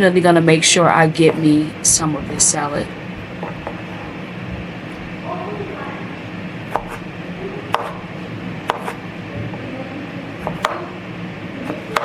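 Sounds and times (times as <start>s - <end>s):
knife chopping on cutting board: 3.4s - 3.9s, 6.7s - 7.1s, 7.7s - 8.0s, 8.6s - 9.0s, 10.4s - 10.9s, 11.6s - 12.0s.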